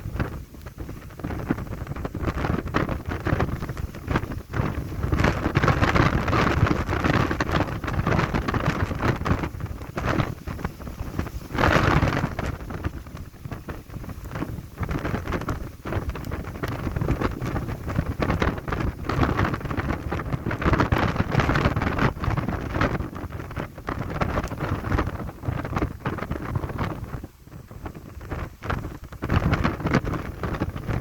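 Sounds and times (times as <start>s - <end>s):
gusty wind buffeting microphone: 0.0s - 31.0s.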